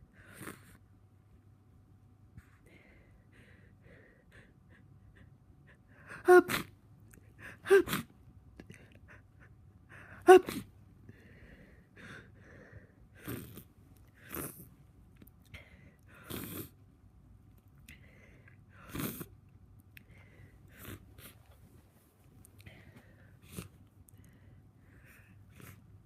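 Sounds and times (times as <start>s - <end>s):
person sniffing congested nose: 13.2s - 14.7s, 16.1s - 16.8s, 18.8s - 19.3s, 22.8s - 23.8s.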